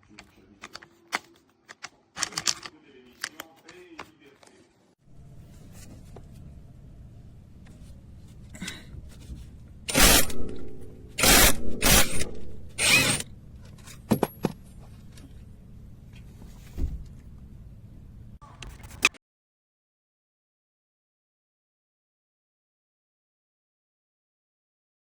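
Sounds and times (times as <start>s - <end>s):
cordless impact wrench: 9.9s - 13.3s.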